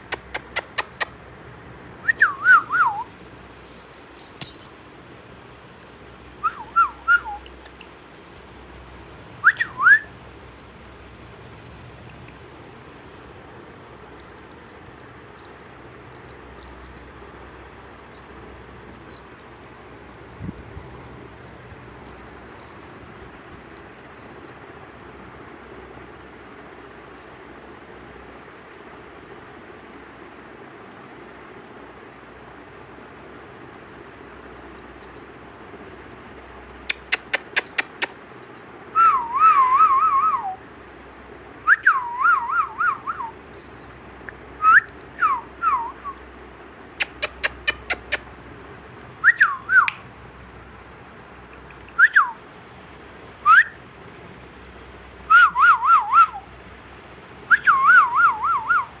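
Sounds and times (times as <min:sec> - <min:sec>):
parrot sharp clicks: 0:36.9 - 0:38.2, 0:47.0 - 0:48.2.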